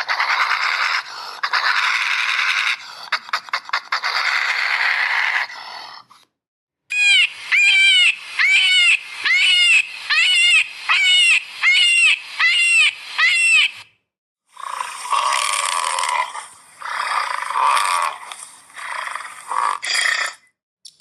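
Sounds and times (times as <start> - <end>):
animal calling high notes: 6.9 - 13.8
rasping hiss with clicks: 6.9 - 13.8, 17.6 - 19.5.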